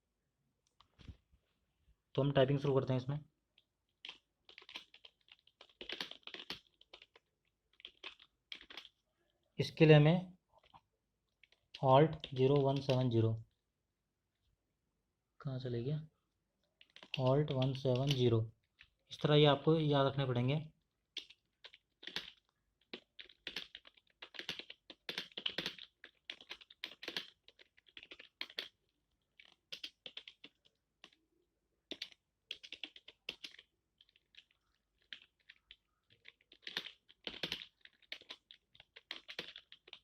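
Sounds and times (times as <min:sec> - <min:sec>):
computer keyboard typing: 0:04.0 - 0:09.0, 0:11.4 - 0:13.1, 0:16.8 - 0:19.3, 0:21.1 - 0:31.2, 0:31.8 - 0:40.0.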